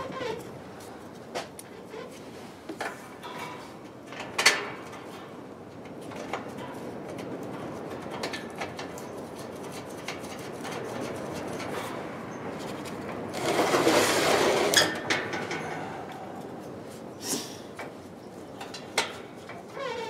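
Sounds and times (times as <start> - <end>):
steady rustle: 0.0 - 20.0
metal cabinet scraping: 13.3 - 16.2.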